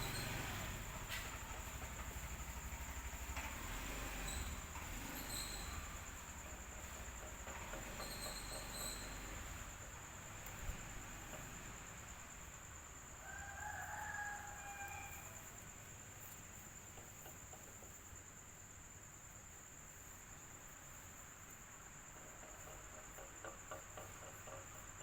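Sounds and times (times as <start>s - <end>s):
electric fan whining: 0.0s - 16.3s.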